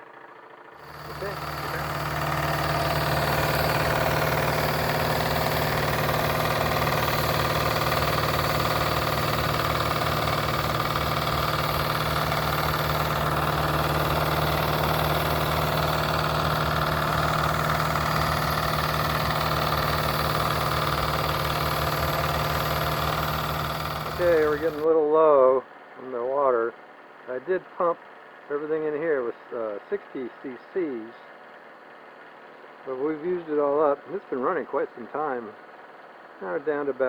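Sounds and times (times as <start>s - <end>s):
model steam engine running: 0.0s - 24.9s.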